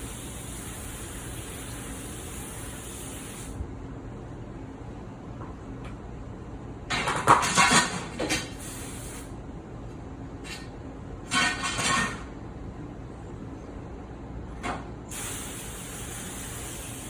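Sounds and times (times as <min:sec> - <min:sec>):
kitchen items clattering against metal sink: 0:06.9 - 0:08.5.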